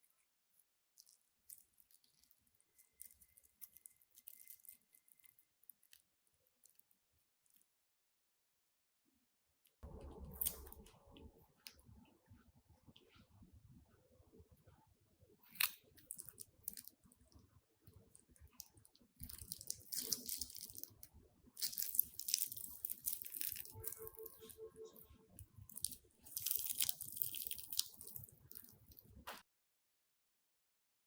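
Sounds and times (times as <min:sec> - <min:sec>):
crunchy slime crackling: 0:01.0 - 0:06.8, 0:10.1 - 0:10.9, 0:15.5 - 0:17.0, 0:18.1 - 0:29.2.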